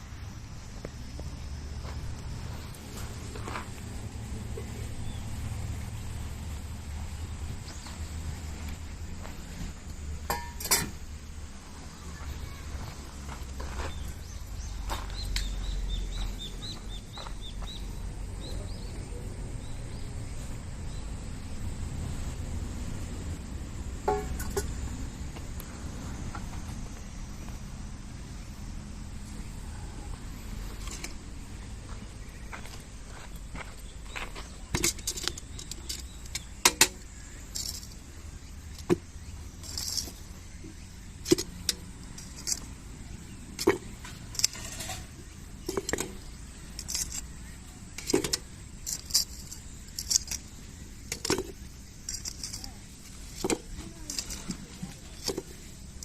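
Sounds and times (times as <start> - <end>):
steady low rumble: 0.0 - 10.3
bird chirping: 12.0 - 22.3
small hard parts clicking: 34.7 - 42.9, 43.5 - 56.0.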